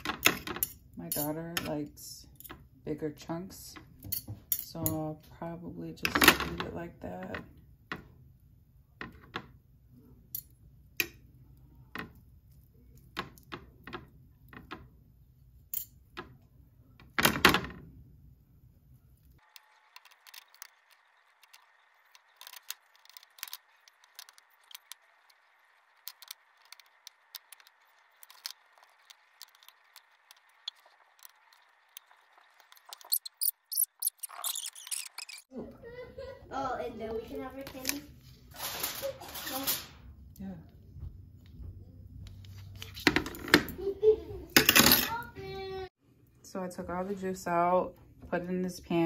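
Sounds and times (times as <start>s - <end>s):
kitchen utensils clicking and knocking: 0.0s - 1.8s, 19.4s - 35.5s, 44.6s - 45.3s
utensils clattering: 38.5s - 40.0s, 44.6s - 45.2s.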